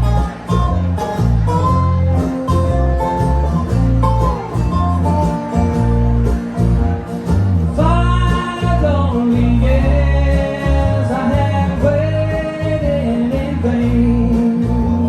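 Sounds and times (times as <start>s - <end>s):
bluegrass band playing: 0.0s - 15.0s
person singing: 7.6s - 15.0s.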